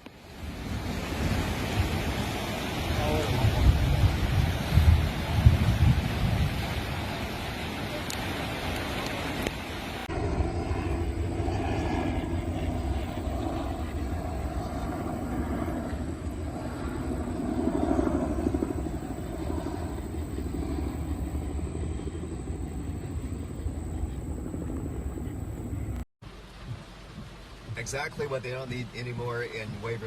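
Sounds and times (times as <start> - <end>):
engine rumble: 10.0 - 26.0.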